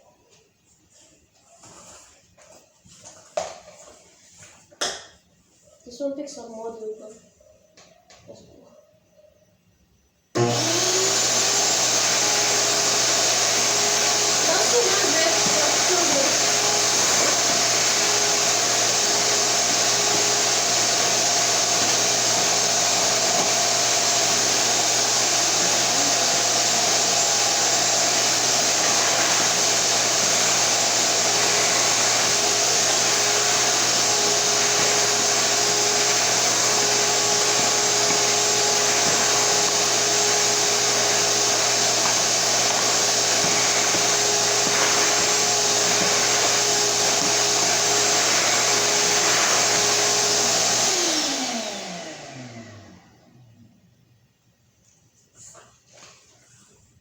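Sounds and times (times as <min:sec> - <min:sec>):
vacuum cleaner running: 0:10.3 - 0:53.8.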